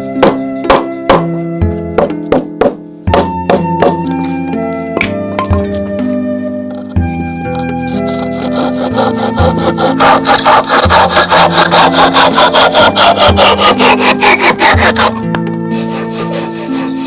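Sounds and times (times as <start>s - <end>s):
background music with held notes: 0.0s - 17.0s
handsaw cutting wood: 6.7s - 17.0s.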